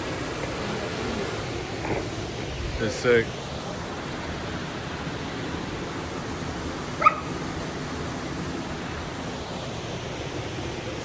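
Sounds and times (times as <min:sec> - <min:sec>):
waterfall rushing: 0:00.0 - 0:01.8
dog yip: 0:07.0 - 0:07.3.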